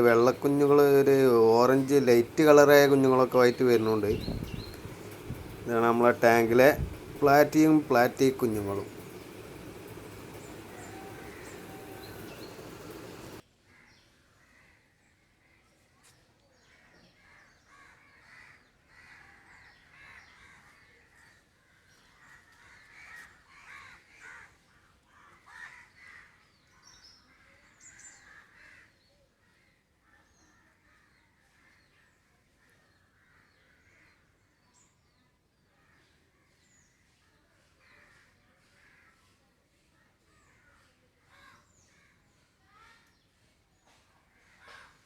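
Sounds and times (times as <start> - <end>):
faint bird calls: 0.0 - 14.0.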